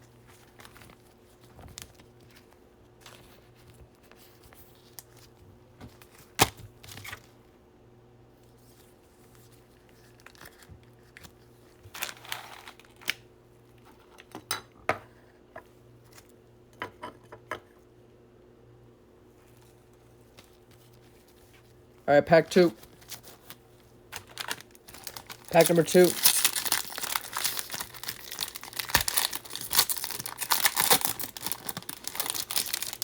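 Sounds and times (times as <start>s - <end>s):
card pack wrapper tearing: 22.5s - 33.0s.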